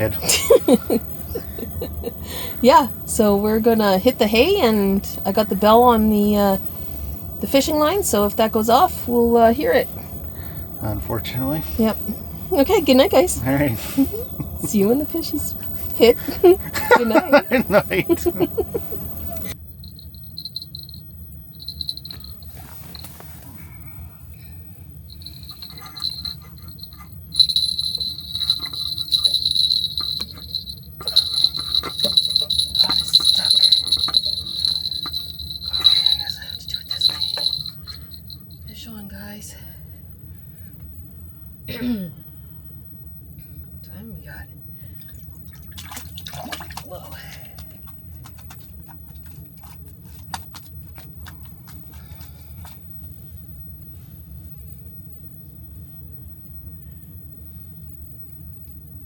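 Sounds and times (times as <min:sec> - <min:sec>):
small bell jingling rapidly: 0:00.0 - 0:23.1, 0:25.0 - 0:38.9
steady low hum: 0:00.0 - 0:59.0.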